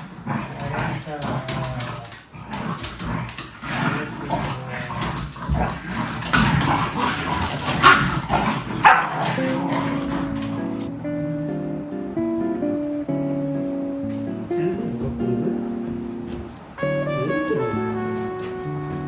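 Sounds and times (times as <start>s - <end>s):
dogs yipping and barking: 5.0s - 10.9s
guitar music: 6.4s - 19.0s.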